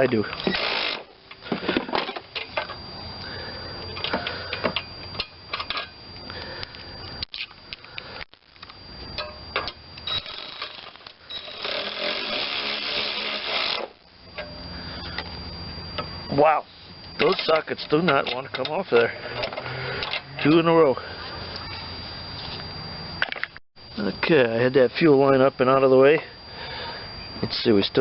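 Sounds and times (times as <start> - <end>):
metal tools clinking: 4.0 - 6.0, 17.2 - 20.6.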